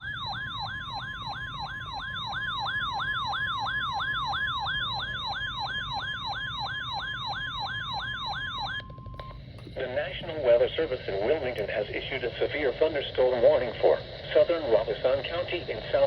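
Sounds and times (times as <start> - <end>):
electronic alert siren sweep: 0.0 - 9.3.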